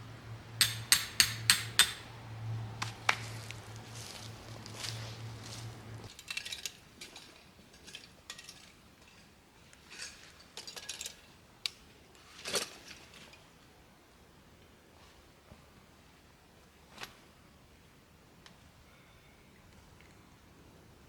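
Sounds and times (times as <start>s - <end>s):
small hard objects clinking: 6.1s - 8.8s.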